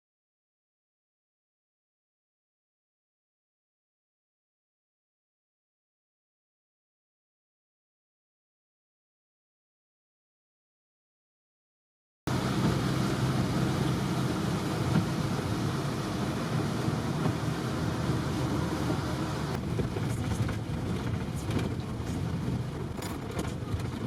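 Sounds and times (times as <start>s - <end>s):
bus engine and road noise: 12.3s - 24.0s.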